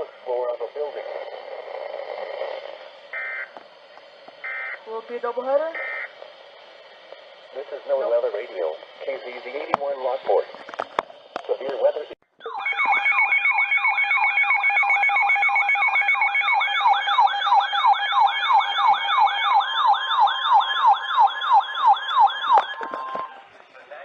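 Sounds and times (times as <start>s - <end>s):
electronic alert siren yelping: 3.1s - 3.6s, 4.4s - 6.2s, 12.4s - 23.4s.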